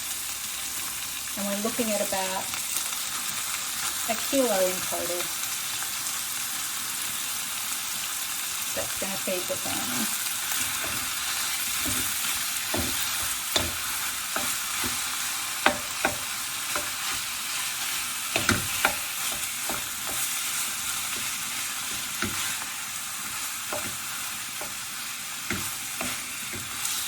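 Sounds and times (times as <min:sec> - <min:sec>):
meat sizzling in hot oil: 0:00.0 - 0:27.0
utensil scraping metal wok: 0:08.8 - 0:27.0.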